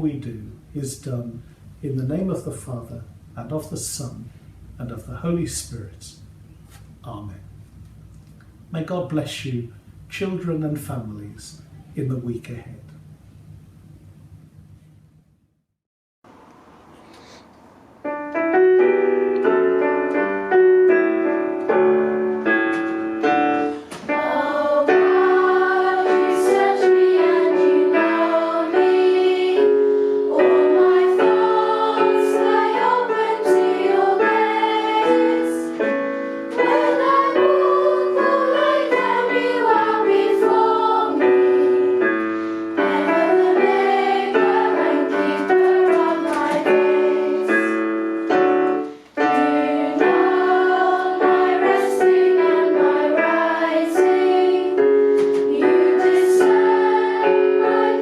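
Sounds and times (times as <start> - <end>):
hymn on piano: 16.6 - 58.0
voices singing: 24.0 - 42.1, 42.7 - 47.9, 49.2 - 58.0.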